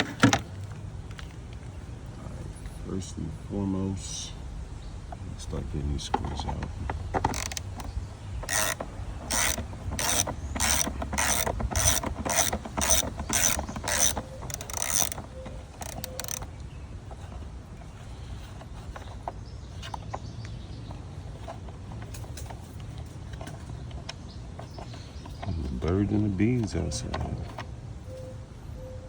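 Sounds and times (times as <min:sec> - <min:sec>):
hand ratchet clicking: 0:06.9 - 0:16.5.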